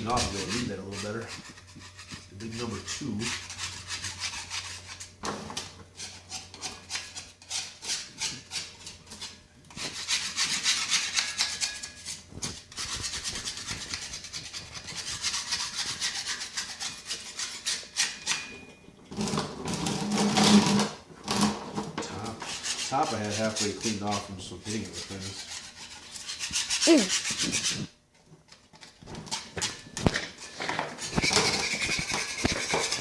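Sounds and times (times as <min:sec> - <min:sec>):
scrubbing on an anvil: 0:16.5 - 0:18.8.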